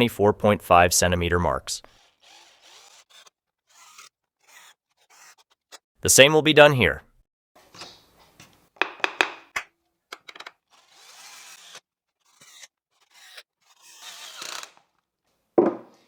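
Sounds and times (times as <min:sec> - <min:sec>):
wooden boards knocking: 0:08.8 - 0:09.5, 0:15.6 - 0:15.9.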